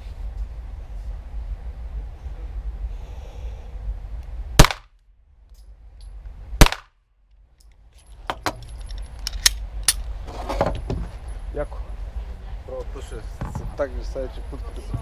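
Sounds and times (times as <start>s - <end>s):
pistol shots: 4.6s - 4.9s, 6.6s - 7.0s.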